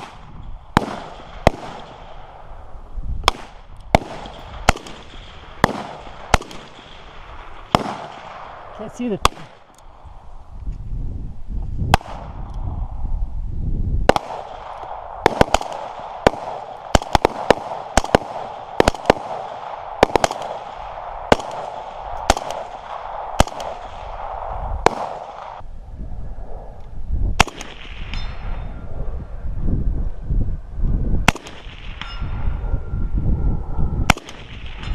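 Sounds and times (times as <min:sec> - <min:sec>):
rifle shots at steel targets: 0:00.0 - 0:02.4, 0:03.2 - 0:09.7, 0:14.1 - 0:25.6.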